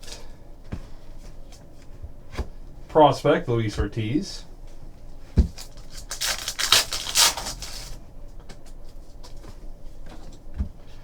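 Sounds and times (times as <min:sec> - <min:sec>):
cards and packaging rustling: 0:05.5 - 0:08.0.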